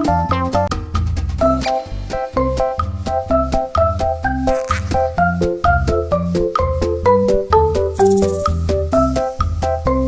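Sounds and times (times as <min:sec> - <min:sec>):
upbeat music with bass line: 0:00.0 - 0:10.0.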